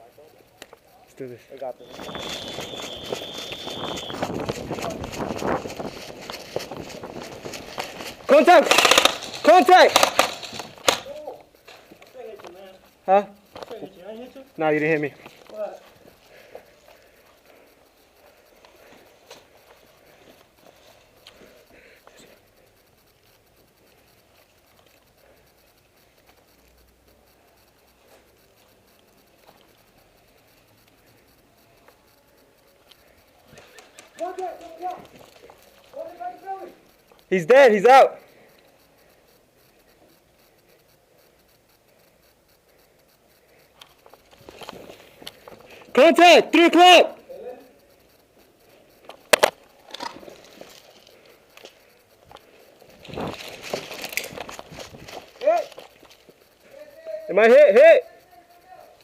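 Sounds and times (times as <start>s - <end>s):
soft ticks: 0.0s - 1.7s, 10.8s - 37.3s, 38.2s - 46.0s, 47.2s - 59.0s
faint clicks: 0.0s - 37.3s, 38.1s - 46.0s, 47.2s - 59.0s
faint scratchy rustling: 1.2s - 37.3s
footsteps: 1.6s - 22.4s, 32.8s - 37.3s, 43.8s - 46.1s, 48.4s - 56.4s
airsoft gun shots: 8.5s - 11.1s.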